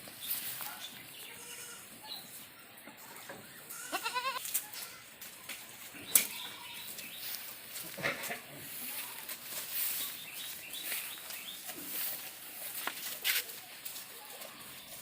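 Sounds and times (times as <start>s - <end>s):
goat bleating: 1.2s - 2.0s, 3.7s - 5.1s, 6.2s - 6.9s, 7.8s - 9.4s.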